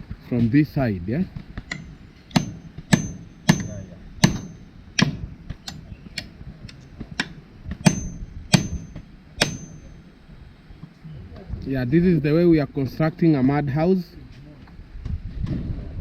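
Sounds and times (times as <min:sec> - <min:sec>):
high metallic ring: 0:01.7 - 0:06.0, 0:07.8 - 0:10.2
hammer driving nails: 0:01.7 - 0:10.0.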